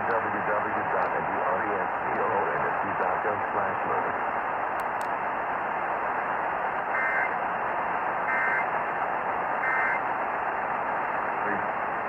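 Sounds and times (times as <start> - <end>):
voice reading over radio: 0.0 - 4.2, 11.4 - 11.7
radio hiss and static: 0.0 - 12.0.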